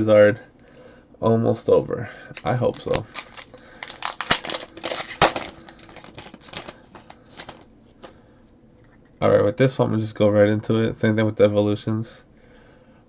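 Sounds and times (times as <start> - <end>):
foil wrapper crinkling and tearing: 2.4 - 7.7.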